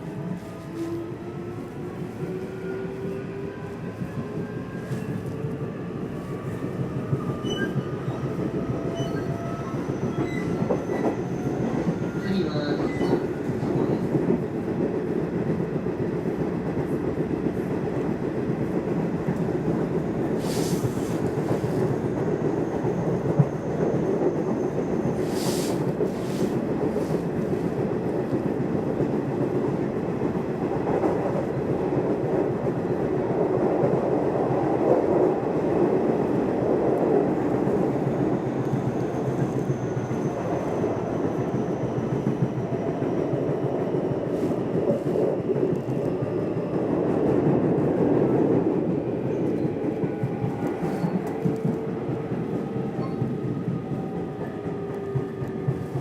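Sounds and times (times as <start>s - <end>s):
train wheels rumbling on track: 0.0s - 56.0s
brief hisses: 20.4s - 21.2s, 25.2s - 26.6s.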